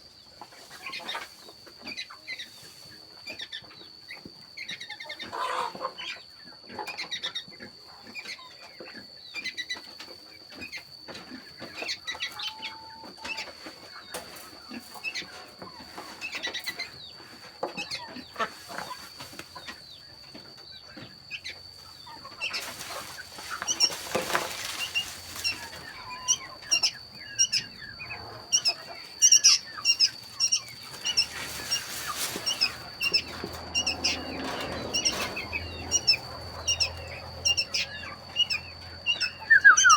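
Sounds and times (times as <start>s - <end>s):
small birds chirping: 0.1s - 39.9s
rustling noise: 22.3s - 26.4s, 30.0s - 36.5s.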